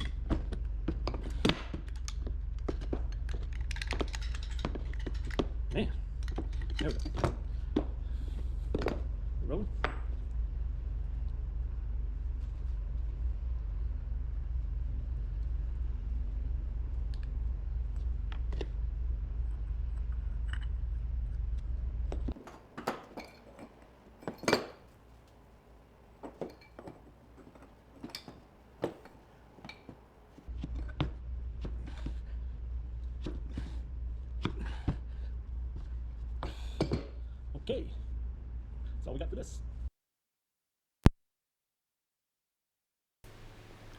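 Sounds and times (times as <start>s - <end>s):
steady low hum: 2.1s - 39.9s
metal tools clinking: 22.4s - 30.4s.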